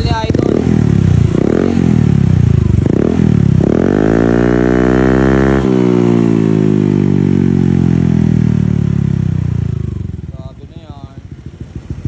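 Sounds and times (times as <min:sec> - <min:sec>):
scooter engine revving: 0:00.0 - 0:12.0.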